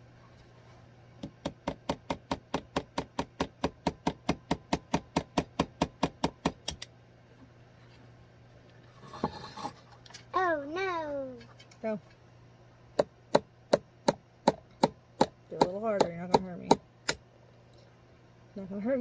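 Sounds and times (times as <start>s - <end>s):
hammer tapping nail into wood: 1.2s - 6.8s.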